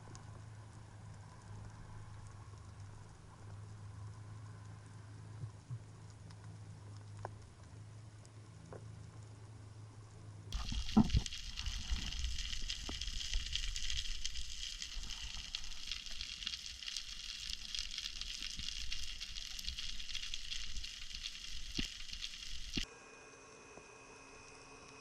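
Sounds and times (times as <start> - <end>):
underwater crackling hiss: 10.5 - 22.9.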